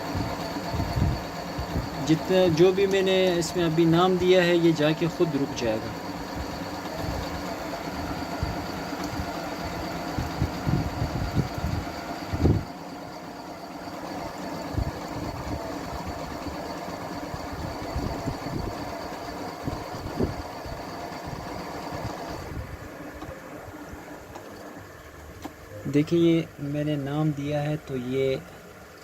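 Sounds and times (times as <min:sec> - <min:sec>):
sewing machine stitching: 0:00.0 - 0:22.5.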